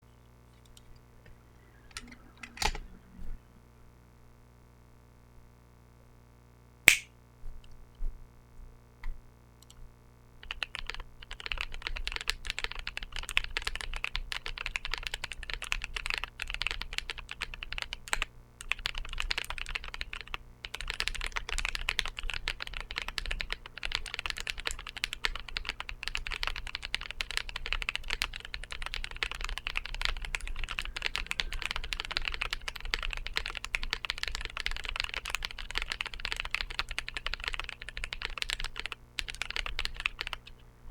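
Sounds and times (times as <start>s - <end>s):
mechanical keyboard typing: 10.4s - 40.6s.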